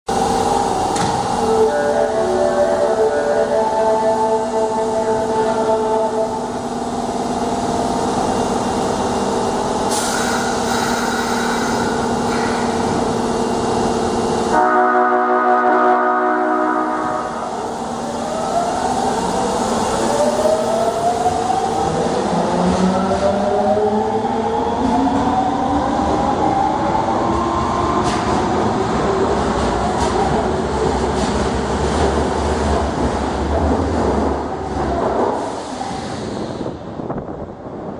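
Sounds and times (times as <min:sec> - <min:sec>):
subway train humming: 0:00.1 - 0:37.9
compressed air hiss: 0:09.9 - 0:12.5.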